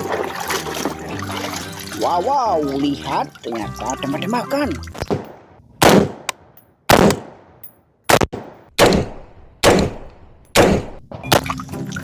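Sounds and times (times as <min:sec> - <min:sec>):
toy gun shots: 0:08.8 - 0:11.0.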